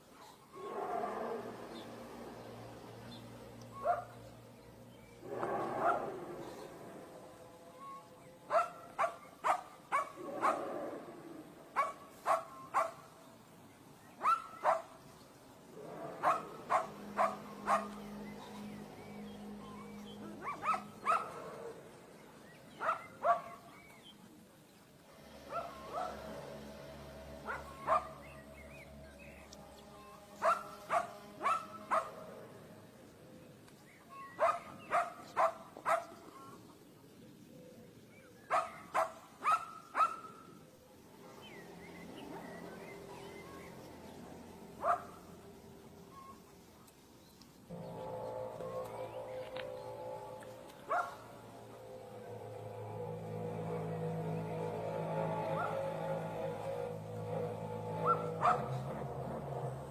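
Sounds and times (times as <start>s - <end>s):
dog barking: 3.8s - 4.2s, 5.8s - 6.1s, 8.5s - 10.7s, 11.8s - 13.0s, 14.2s - 15.0s, 16.2s - 18.0s, 20.4s - 21.5s, 22.8s - 23.7s, 25.5s - 26.3s, 27.4s - 28.2s, 30.4s - 32.2s, 34.4s - 36.2s, 38.5s - 40.4s, 44.8s - 45.2s, 50.9s - 51.2s, 55.6s - 55.8s, 58.0s - 58.9s
faint low hum: 39.9s - 59.9s.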